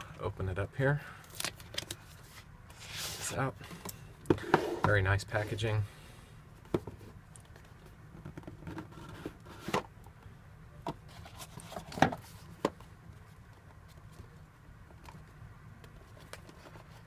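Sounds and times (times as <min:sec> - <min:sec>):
packaging being opened by hand: 0:01.3 - 0:02.1.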